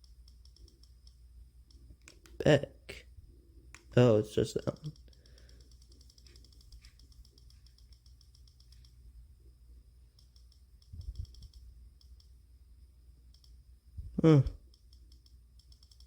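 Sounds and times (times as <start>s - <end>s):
fast even clicking: 0.0s - 2.4s, 4.6s - 9.0s, 10.2s - 12.3s, 14.7s - 16.0s
low steady hum: 0.0s - 16.0s.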